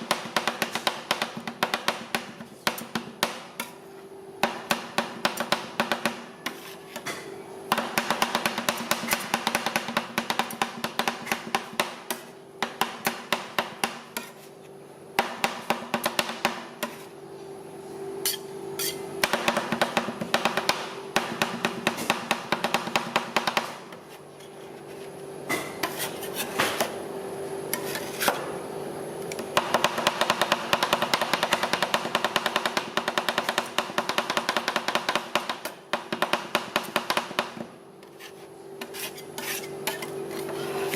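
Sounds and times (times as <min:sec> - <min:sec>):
metal spatulas chopping on plate: 0:04.5 - 0:14.5, 0:18.2 - 0:23.8.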